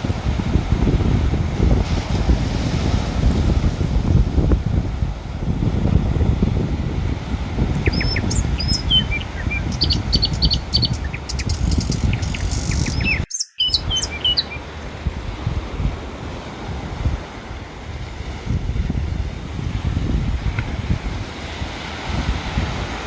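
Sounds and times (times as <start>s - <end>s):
surf rumble: 0.0s - 23.0s
wind on microphone: 0.0s - 23.0s
small birds chirping: 7.8s - 14.7s.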